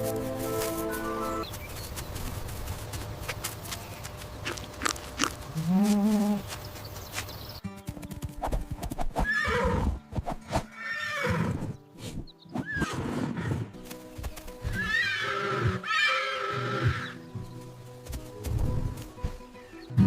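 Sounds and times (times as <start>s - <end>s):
background music: 0.0s - 1.5s, 7.6s - 20.0s
hooves clip-clopping: 0.0s - 9.4s, 13.8s - 15.2s, 17.1s - 19.6s
horses whinnying: 9.2s - 10.0s, 10.8s - 11.7s, 12.6s - 13.7s, 14.7s - 17.2s.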